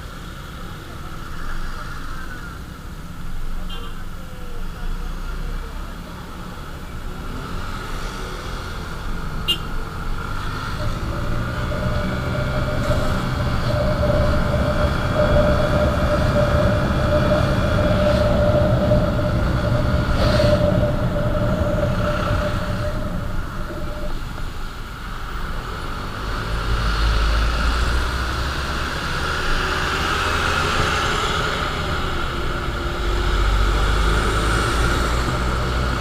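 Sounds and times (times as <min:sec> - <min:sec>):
road noise: 0:00.0 - 0:36.0
steady whine: 0:10.8 - 0:25.6.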